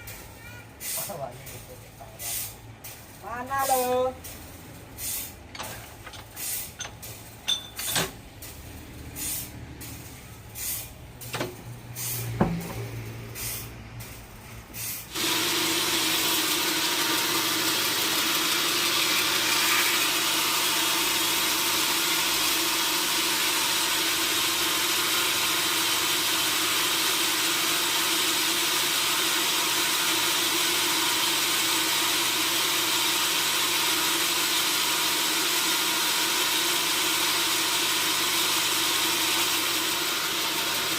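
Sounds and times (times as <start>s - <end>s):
sawmill saw running: 15.0s - 40.9s.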